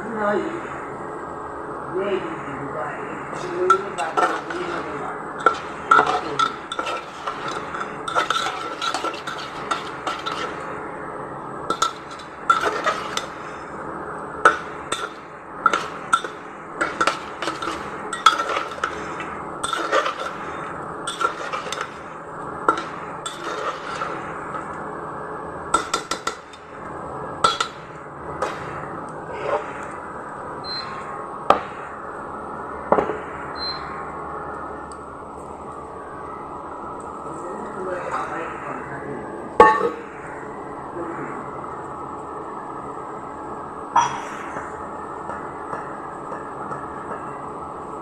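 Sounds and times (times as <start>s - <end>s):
metal spoon stirring in a pot: 3.7s - 10.7s, 11.7s - 13.4s, 14.4s - 24.8s, 25.8s - 26.7s, 27.4s - 27.8s.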